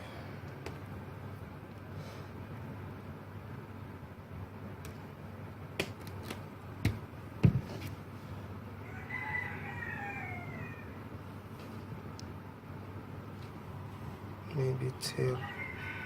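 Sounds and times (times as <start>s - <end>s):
rooster crowing: 8.8s - 11.1s, 15.1s - 16.0s.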